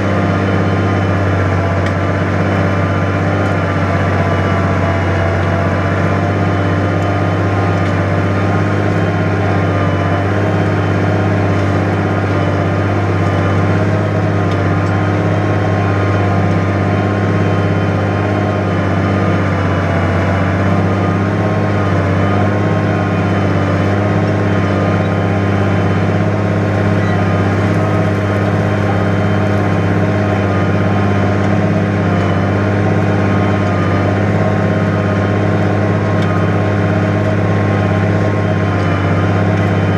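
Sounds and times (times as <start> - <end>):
tractor engine running under load: 0.0 - 39.9.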